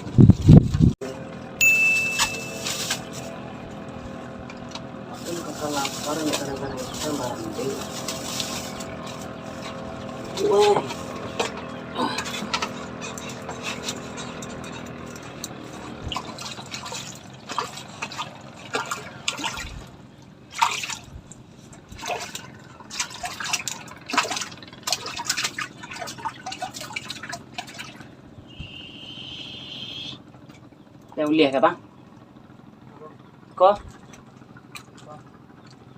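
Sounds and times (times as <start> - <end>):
boat engine running: 0.0 - 35.9
water splashing and dripping: 12.5 - 28.1.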